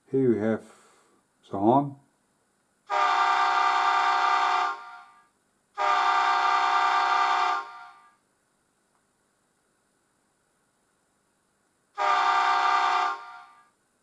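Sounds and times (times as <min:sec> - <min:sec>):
model train diesel horn: 0:02.9 - 0:08.2, 0:12.0 - 0:13.8.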